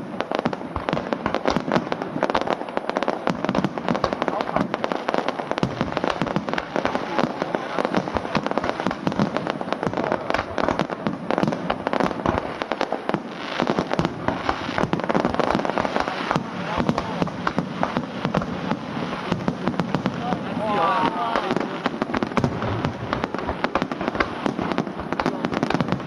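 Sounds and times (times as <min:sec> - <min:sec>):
fireworks crackling bangs: 0:00.0 - 0:26.0.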